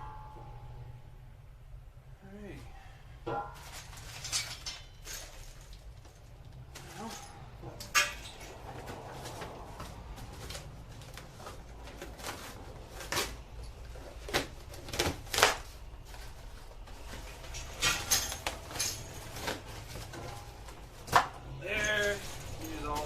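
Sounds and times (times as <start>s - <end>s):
steel parts knocking and clanking: 3.2s - 9.2s, 17.2s - 23.0s.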